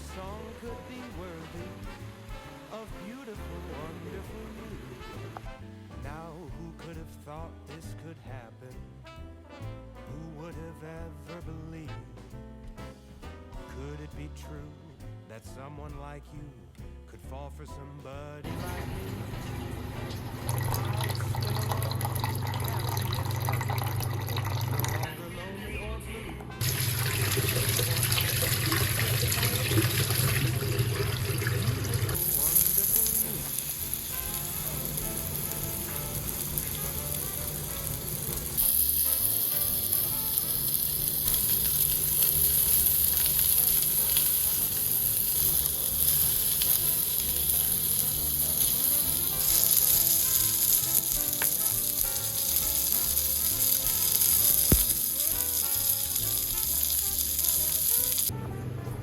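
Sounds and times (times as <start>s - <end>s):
food sizzling in hot oil: 18.5s - 25.0s, 26.6s - 58.3s.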